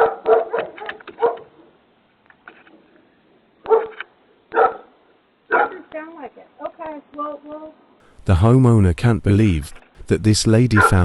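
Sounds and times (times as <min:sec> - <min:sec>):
dog barking: 0:00.0 - 0:01.7, 0:03.6 - 0:05.9, 0:10.7 - 0:11.0.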